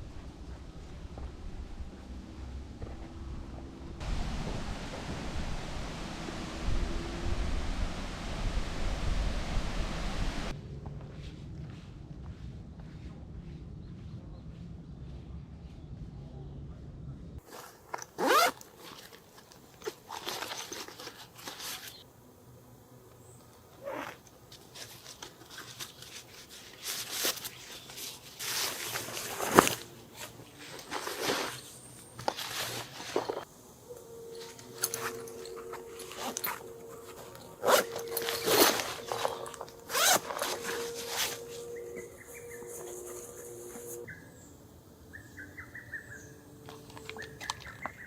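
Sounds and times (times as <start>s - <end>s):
zipper pulled open: 17.4s - 19.1s, 23.8s - 24.3s, 34.8s - 44.1s
rustling and handling sounds: 17.4s - 22.1s, 23.2s - 44.1s.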